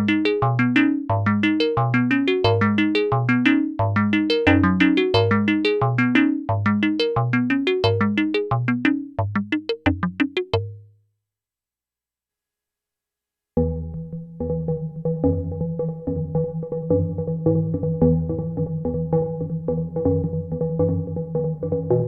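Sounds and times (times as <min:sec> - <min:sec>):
synthesizer sequenced pattern: 0:00.0 - 0:10.9
repeating synth bass note: 0:02.5 - 0:10.8.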